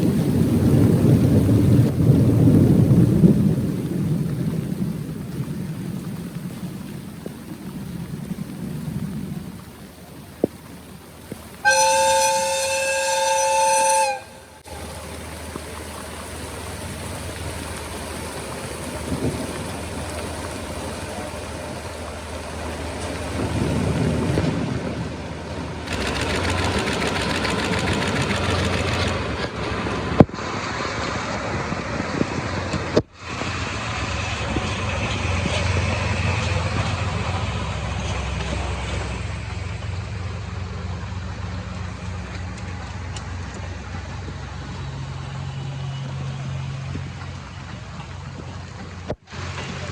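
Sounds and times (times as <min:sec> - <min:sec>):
diesel locomotives rumbling past: 0:00.0 - 0:49.9
heavy rain hiss: 0:00.0 - 0:49.9
two-tone locomotive horn: 0:11.6 - 0:14.8.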